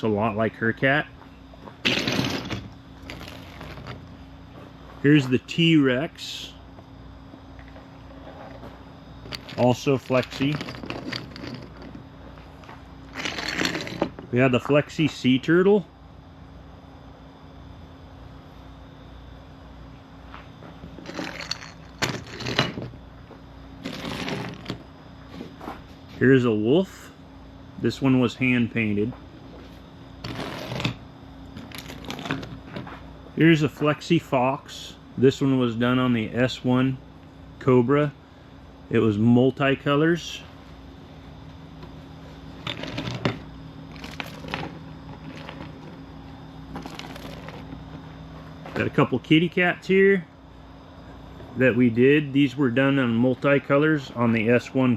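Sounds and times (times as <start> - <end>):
faint steady hum: 0.0 - 54.9
plastic figures rustling and clattering: 42.6 - 46.0.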